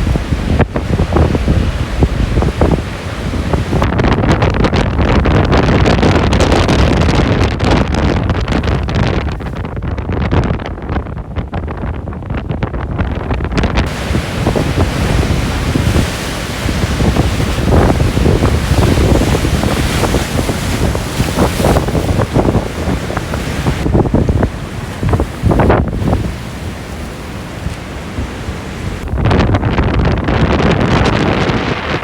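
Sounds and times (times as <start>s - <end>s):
wind buffeting microphone: 0.0s - 32.0s
sea waves hissing: 13.9s - 29.0s.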